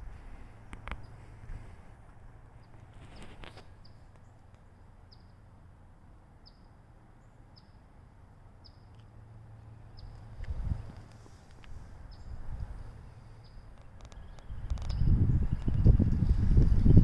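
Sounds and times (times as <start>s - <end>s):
small bird chirping: 2.6s - 5.4s, 6.4s - 7.8s, 8.6s - 9.1s, 12.1s - 17.0s.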